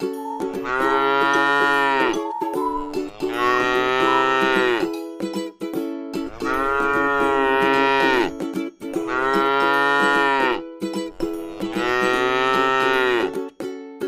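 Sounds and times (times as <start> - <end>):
background music: 0.0 - 14.0
cow mooing: 0.6 - 2.2, 3.0 - 4.9, 6.3 - 8.3, 9.0 - 10.6, 11.2 - 13.4.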